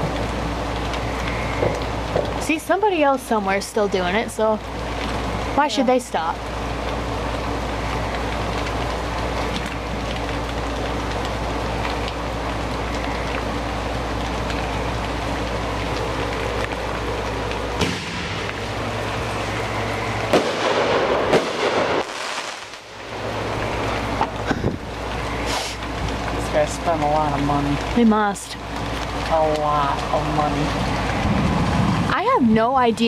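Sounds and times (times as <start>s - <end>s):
fireworks crackling: 0.0s - 32.4s
rain hiss: 0.0s - 33.0s
fireworks bangs: 17.8s - 18.6s, 20.2s - 23.0s.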